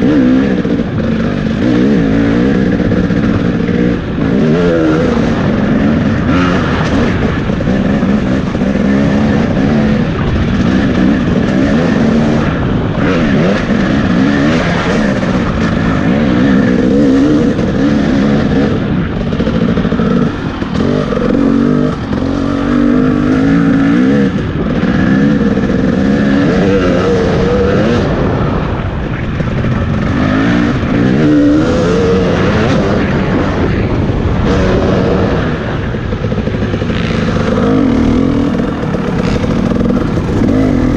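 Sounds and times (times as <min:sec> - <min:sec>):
dirt bike engine revving: 0:00.0 - 0:40.9.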